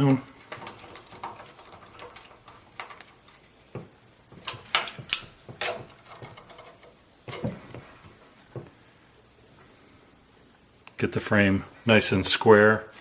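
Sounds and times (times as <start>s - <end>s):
metal hand tools clicking and tapping: 4.3s - 7.5s.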